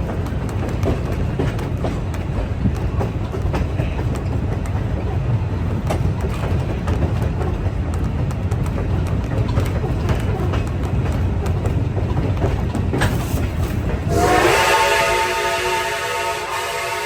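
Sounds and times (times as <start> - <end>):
rail clicks: 0.0 - 17.0
train cars rumbling: 0.0 - 17.0
steam locomotive whistle: 14.0 - 17.0.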